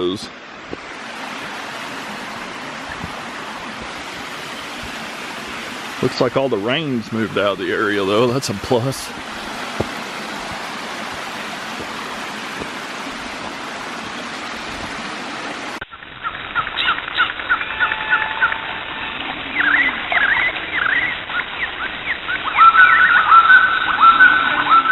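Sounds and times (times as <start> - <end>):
running water rushing: 0.0 - 24.9
birds chirping: 1.1 - 15.4, 19.4 - 24.9.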